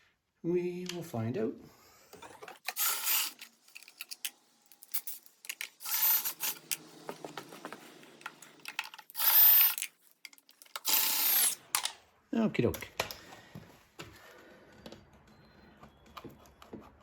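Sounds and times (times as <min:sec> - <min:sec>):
cordless drill spinning: 0:02.2 - 0:04.3, 0:05.0 - 0:09.9, 0:10.7 - 0:11.9.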